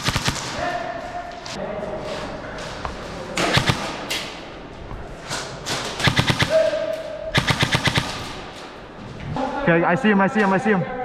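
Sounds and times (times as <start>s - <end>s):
airsoft guns firing bursts: 0.0s - 0.6s, 3.4s - 4.1s, 5.9s - 6.8s, 7.4s - 8.7s.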